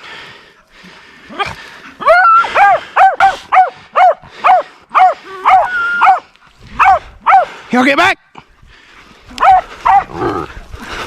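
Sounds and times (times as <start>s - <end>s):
dogs barking rapidly: 2.4s - 7.6s, 9.4s - 10.3s.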